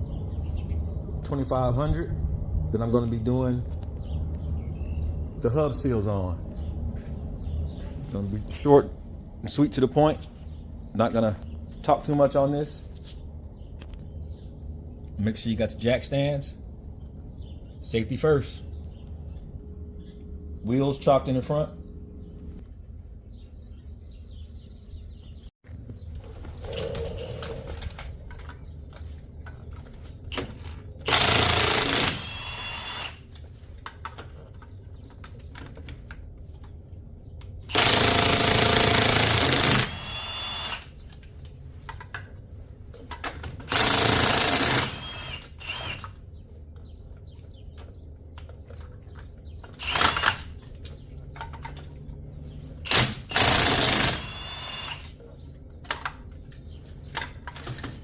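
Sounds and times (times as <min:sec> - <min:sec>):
impact wrench hammering: 0:31.1 - 0:33.3, 0:37.7 - 0:40.9, 0:43.7 - 0:46.1, 0:52.9 - 0:55.1.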